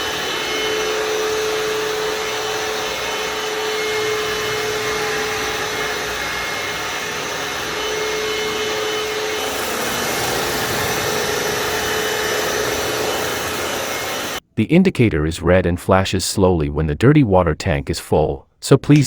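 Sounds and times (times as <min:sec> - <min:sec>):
vacuum cleaner motor whine: 0:00.0 - 0:14.4.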